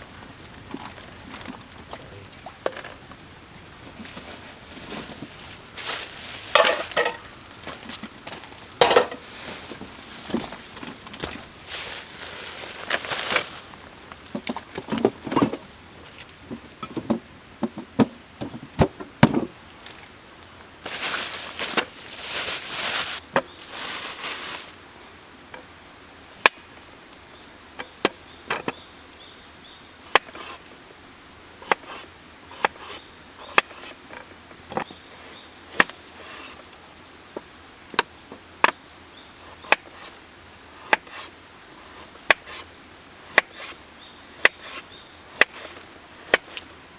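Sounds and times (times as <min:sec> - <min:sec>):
rustling and handling noise: 0:00.2 - 0:17.2, 0:18.5 - 0:24.8.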